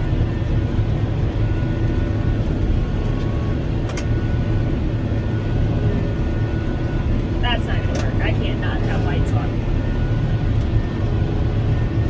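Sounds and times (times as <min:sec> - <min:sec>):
tractor engine drone: 0:00.0 - 0:12.0.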